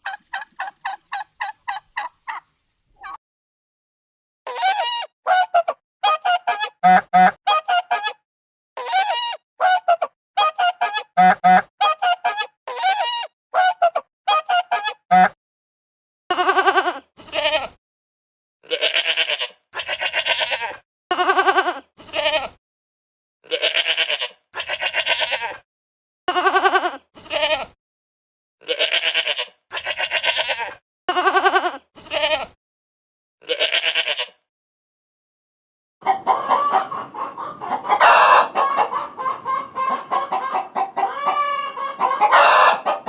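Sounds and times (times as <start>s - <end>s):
livestock bleating: 16.3s - 17.8s, 18.7s - 22.6s, 23.5s - 25.6s, 26.3s - 27.8s, 28.6s - 32.6s, 33.4s - 34.4s.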